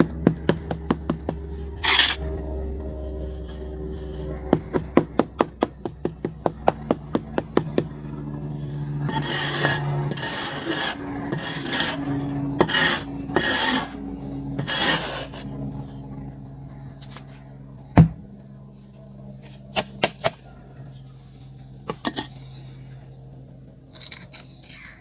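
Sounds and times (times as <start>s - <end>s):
rasping scrapes: 0.0s - 15.9s.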